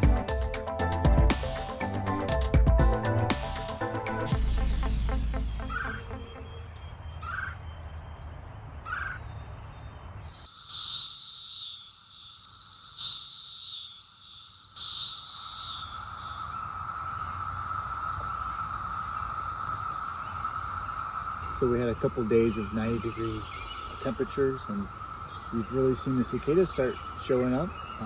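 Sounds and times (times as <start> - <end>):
cicada chorus droning: 0.0 - 6.3, 10.2 - 28.0
loud cicada buzzes: 0.0 - 6.3, 10.2 - 28.0
short cicada calls: 3.4 - 6.4, 10.2 - 28.0.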